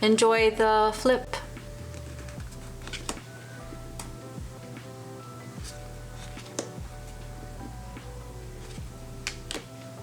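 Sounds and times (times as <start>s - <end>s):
gentle background music: 0.0s - 10.0s
tarot cards clicking: 1.8s - 4.1s, 6.2s - 6.8s.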